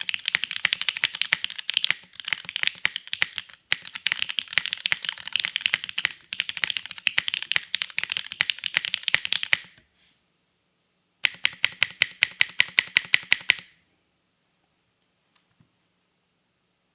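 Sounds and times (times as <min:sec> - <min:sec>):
typing on mechanical keyboard: 0:00.0 - 0:09.8, 0:11.2 - 0:13.7.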